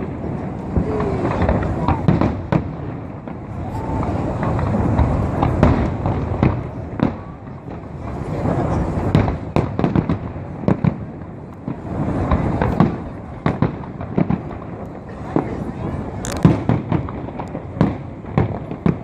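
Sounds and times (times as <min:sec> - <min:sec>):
firework shell bursts and bangs: 0:00.0 - 0:19.0
rumble of overlapping explosions: 0:00.0 - 0:19.0
crackling pops: 0:16.2 - 0:19.0.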